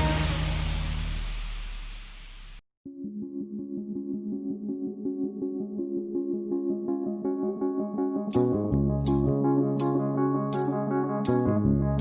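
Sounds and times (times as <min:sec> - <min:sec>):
background music track: 0:00.0 - 0:01.8, 0:06.1 - 0:12.0
synthesizer pulsing note pattern: 0:02.9 - 0:12.0.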